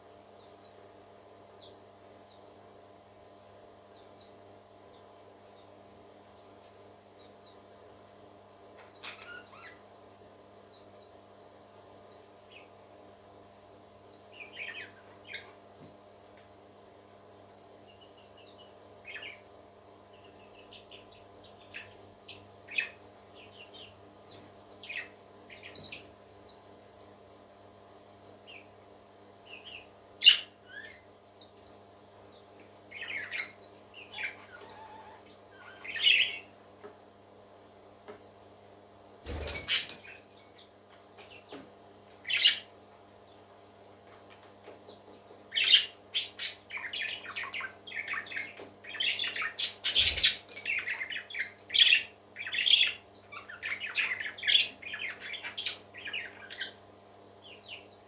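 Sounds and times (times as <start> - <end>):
parrots peeping and squawking: 8.8 - 9.8, 32.9 - 36.5, 39.3 - 40.3, 45.5 - 56.8.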